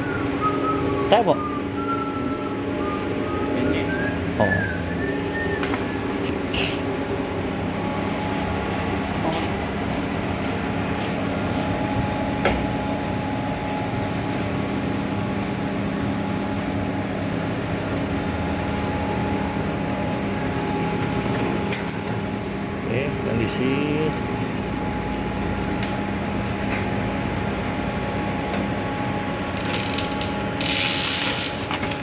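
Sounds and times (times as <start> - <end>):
laminating machine humming: 0.0 - 32.0.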